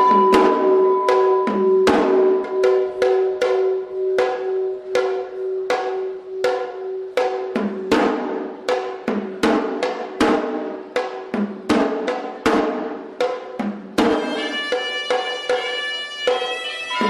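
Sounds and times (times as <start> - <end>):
bell ringing: 0.0 - 7.8
ritual drumming: 0.0 - 17.0.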